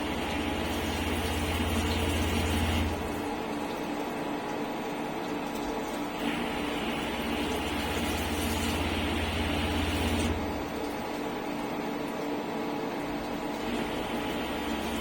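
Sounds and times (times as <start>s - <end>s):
machine humming: 0.0s - 3.5s, 13.5s - 15.0s.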